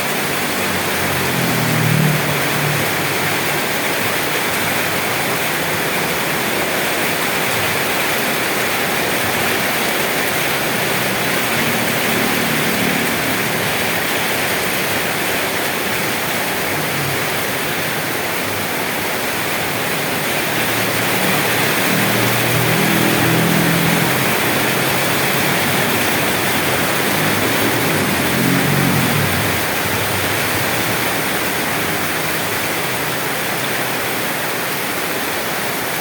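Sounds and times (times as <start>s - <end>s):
heavy rain: 0.0s - 36.0s.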